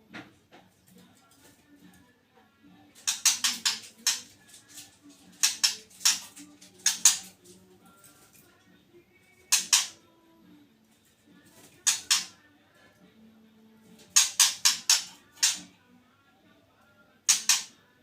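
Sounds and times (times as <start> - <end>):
bird harsh rasping chatter: 3.0 - 7.4, 9.5 - 10.0, 11.8 - 12.4, 14.1 - 15.7, 17.3 - 17.7.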